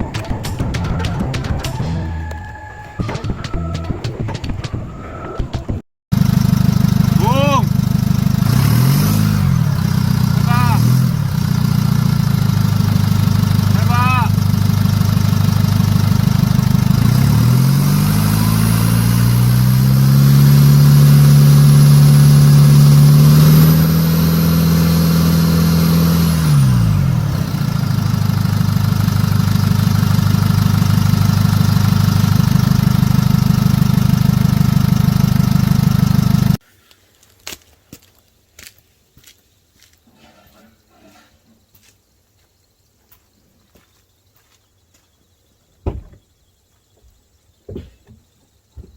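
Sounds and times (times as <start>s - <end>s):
diesel engine idling and revving: 6.1s - 36.6s.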